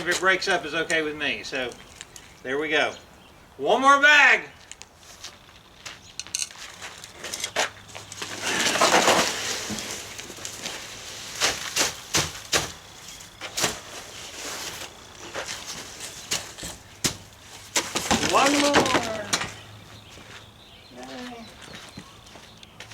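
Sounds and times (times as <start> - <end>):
scrapes and knocks: 7.2 - 19.7
gritty rush of concrete mix: 8.0 - 12.8, 13.4 - 19.6.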